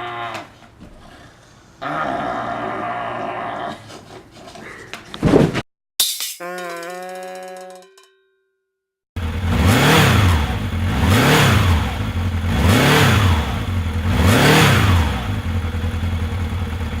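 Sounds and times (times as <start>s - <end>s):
motorcycle engine revving: 9.2s - 17.0s.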